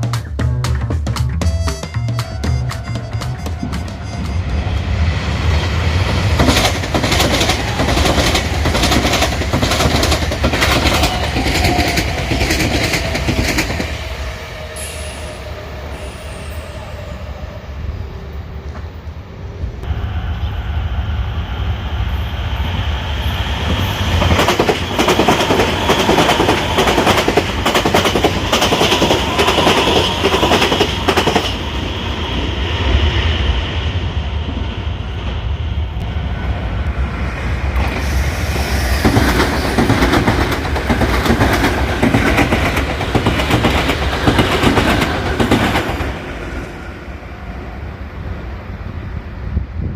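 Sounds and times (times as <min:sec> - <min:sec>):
electric train passing: 0:02.3 - 0:49.9
train wheels clattering over rail joints: 0:06.1 - 0:13.8.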